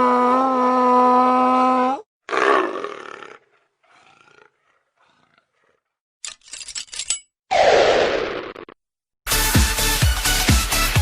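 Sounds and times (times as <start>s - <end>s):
leopard growl: 2.3s - 6.0s.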